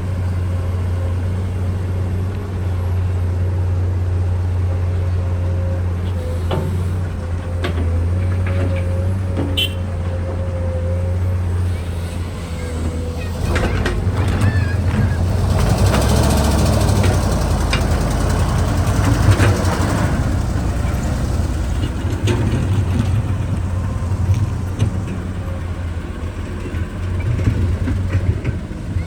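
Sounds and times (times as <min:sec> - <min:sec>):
excavator engine running: 0:00.0 - 0:29.0
machine knocks and rattles: 0:12.8 - 0:25.3.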